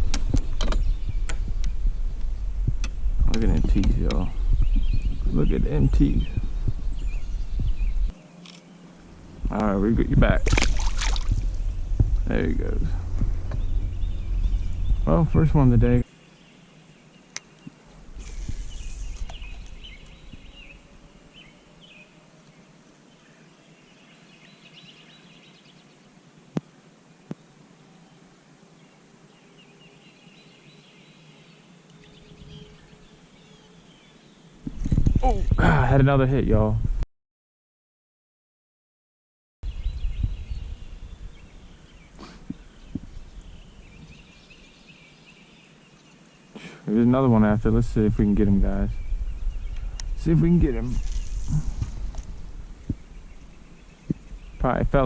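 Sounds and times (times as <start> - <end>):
low rumble on microphone: 0.0 - 8.2, 9.0 - 16.0, 17.9 - 21.3, 34.7 - 37.0, 39.6 - 44.4, 47.0 - 55.0
birds chirping: 0.0 - 36.1, 39.6 - 55.0.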